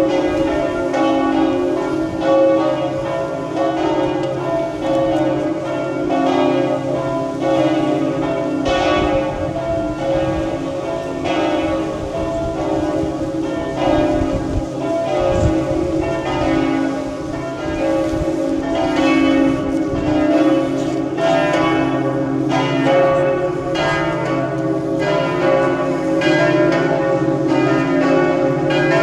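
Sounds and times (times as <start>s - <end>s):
church bells pealing: 0.0s - 29.0s.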